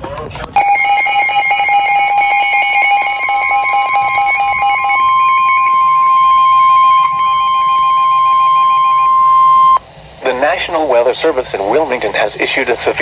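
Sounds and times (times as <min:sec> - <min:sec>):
fast-pulsing alarm tone: 0:00.6 - 0:09.8
steady single warning tone: 0:00.6 - 0:11.4.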